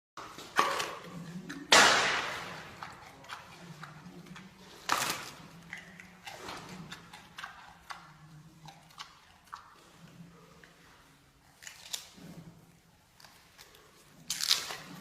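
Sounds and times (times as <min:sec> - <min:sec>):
panda crunching bamboo: 0:00.3 - 0:08.0, 0:13.6 - 0:15.0
bamboo snapping: 0:14.3 - 0:14.9.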